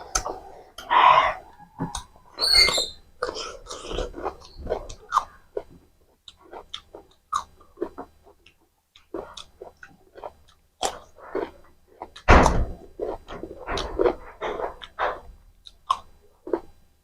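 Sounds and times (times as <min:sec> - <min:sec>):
close chewing mouth sounds: 0:03.2 - 0:16.8.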